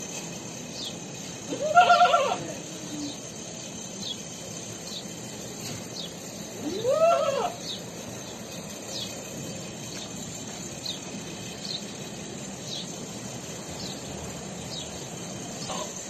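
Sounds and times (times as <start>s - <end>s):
small birds chirping: 0.5s - 16.0s
goat bleating: 1.5s - 2.6s, 6.6s - 7.6s.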